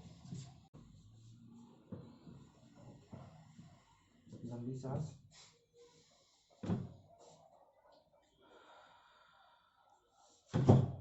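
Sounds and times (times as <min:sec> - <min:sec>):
person breathing deeply: 0:08.4 - 0:10.5.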